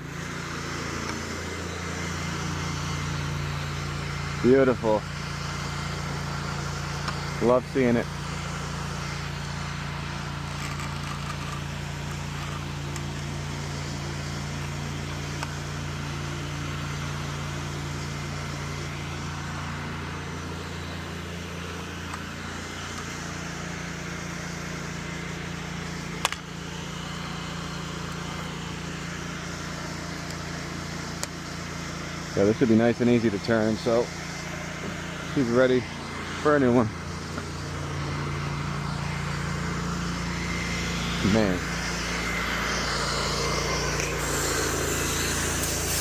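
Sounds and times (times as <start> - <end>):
pressure washer engine running: 0.0 - 46.0
sharp click: 26.2 - 26.5.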